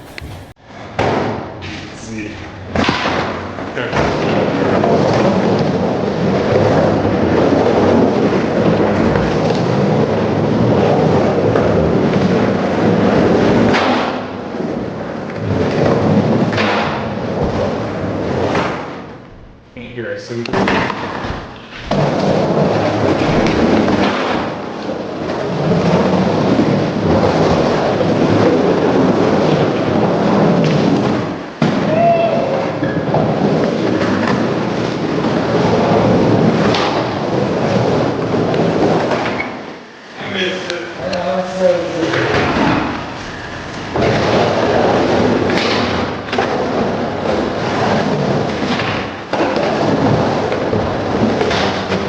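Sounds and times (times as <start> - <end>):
skateboard wheels rolling on wood: 0.0 - 19.7, 20.3 - 52.0.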